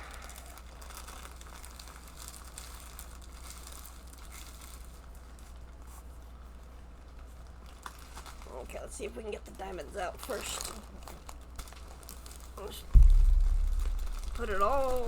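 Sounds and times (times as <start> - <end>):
packaging crinkling: 0.1 - 5.8
low hum: 13.0 - 15.0.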